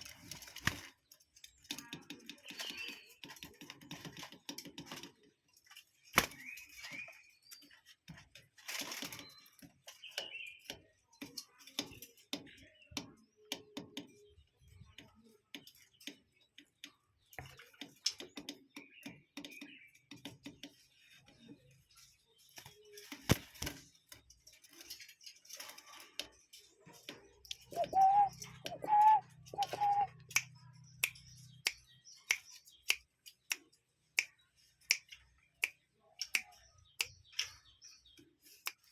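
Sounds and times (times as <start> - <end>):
faint bird chirps: 21.0 - 38.9
sharp irregular clicks and taps: 27.1 - 37.6
bird call notes rising: 27.7 - 30.2.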